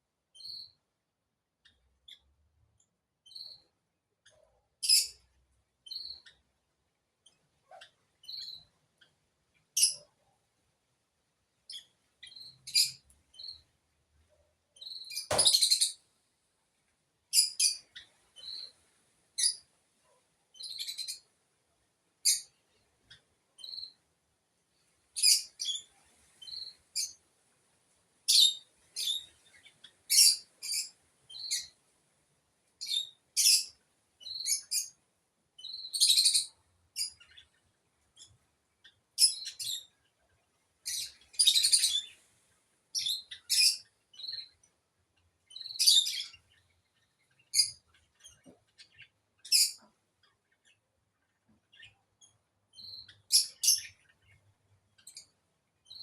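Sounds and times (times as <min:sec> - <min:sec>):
bird chirping: 0:00.4 - 0:00.8, 0:01.6 - 0:05.2, 0:05.8 - 0:06.5, 0:07.2 - 0:10.2, 0:11.7 - 0:13.7, 0:14.8 - 0:16.1, 0:17.3 - 0:18.8, 0:20.5 - 0:21.3, 0:22.2 - 0:24.0, 0:25.2 - 0:27.2, 0:28.3 - 0:31.8, 0:32.8 - 0:35.0, 0:35.6 - 0:40.2, 0:40.8 - 0:42.2, 0:42.9 - 0:56.0.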